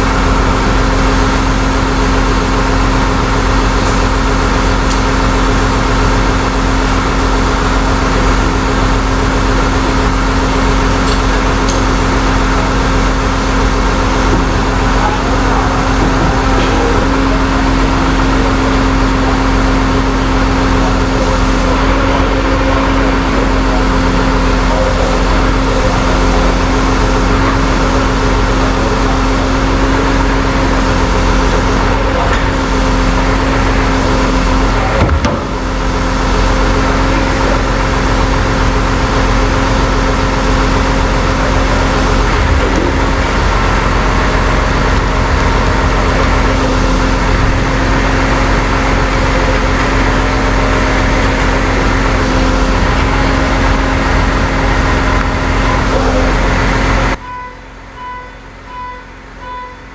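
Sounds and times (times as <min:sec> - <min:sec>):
truck engine humming: 0:00.0 - 0:59.9.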